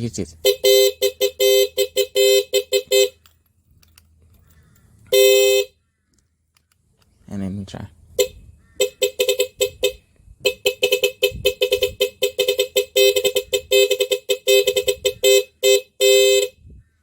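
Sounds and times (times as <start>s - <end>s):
electric horn beeps playing a tune: 0.4s - 3.2s, 5.1s - 5.7s, 8.2s - 16.6s.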